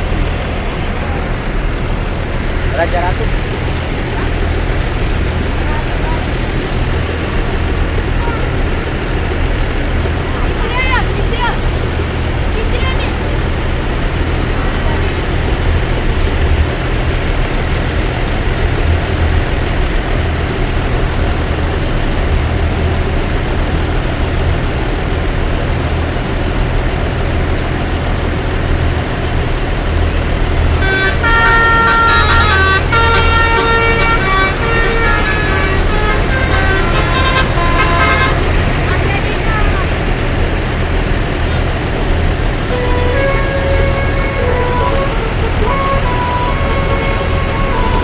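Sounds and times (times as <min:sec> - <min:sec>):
large vehicle engine running: 0:00.0 - 0:48.0
musical air horn tune: 0:12.6 - 0:18.1, 0:30.7 - 0:40.4, 0:42.6 - 0:48.0.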